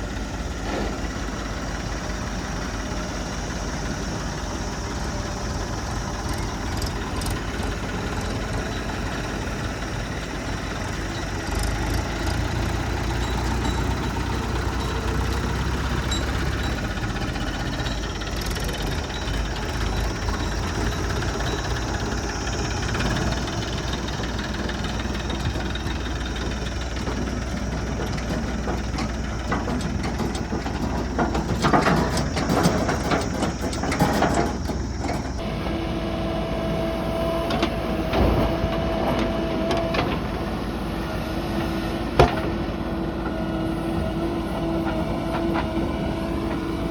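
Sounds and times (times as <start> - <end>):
diesel engine running: 0.0 - 46.9
clattering knocks: 11.6 - 35.4.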